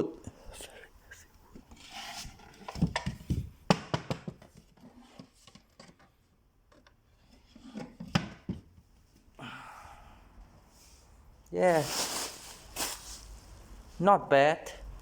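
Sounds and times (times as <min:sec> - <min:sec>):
knocks of hard objects set down: 0:02.7 - 0:04.6.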